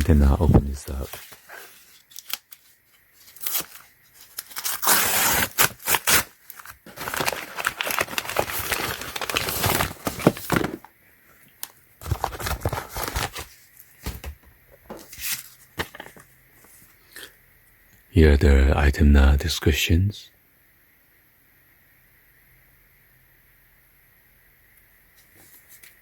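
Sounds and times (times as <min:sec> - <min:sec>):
packaging tearing and crinkling: 0:00.1 - 0:10.9, 0:12.0 - 0:14.3
small clicks and handling noises: 0:01.1 - 0:04.6.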